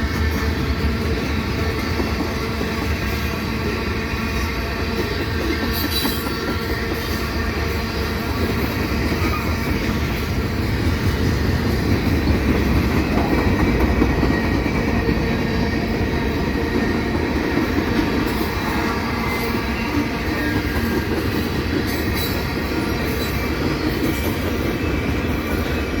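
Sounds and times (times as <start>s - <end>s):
freight train wheels rumbling: 0.0s - 26.0s.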